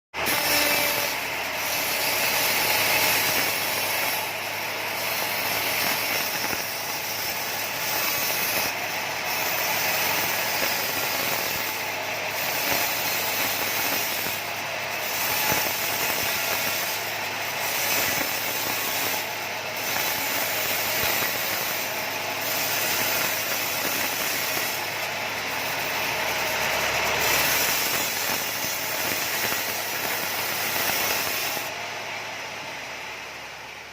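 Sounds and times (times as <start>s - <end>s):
band saw mill sawing log: 0.1s - 33.2s.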